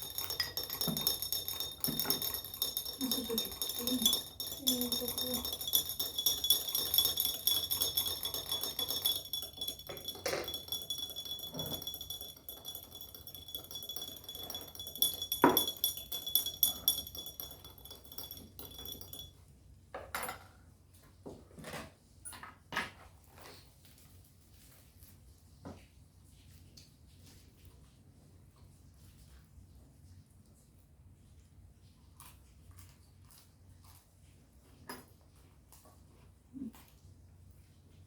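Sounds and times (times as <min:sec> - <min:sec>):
dishes and cutlery clinking: 0:00.0 - 0:19.3
high-pitched ringing trill: 0:00.0 - 0:19.3.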